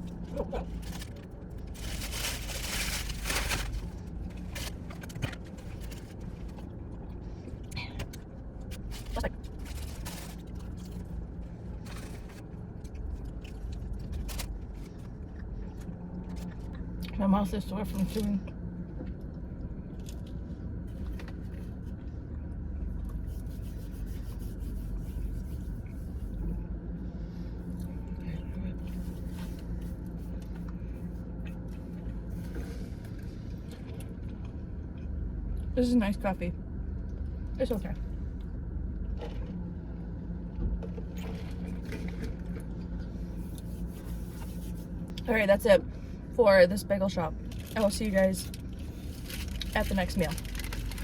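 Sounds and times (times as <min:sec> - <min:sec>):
low steady rumble: 0:00.0 - 0:51.0
paper wrapper crinkling: 0:00.6 - 0:06.2, 0:08.8 - 0:11.1, 0:47.4 - 0:51.0.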